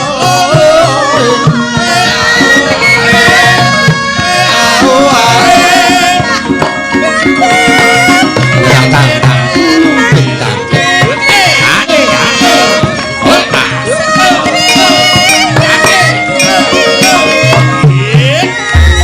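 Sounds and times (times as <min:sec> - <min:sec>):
hand drum beating: 0:00.0 - 0:19.0.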